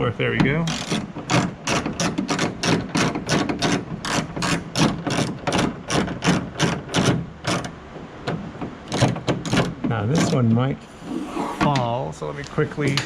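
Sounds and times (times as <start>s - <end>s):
socket ratchet clicking: 0.7s - 7.7s.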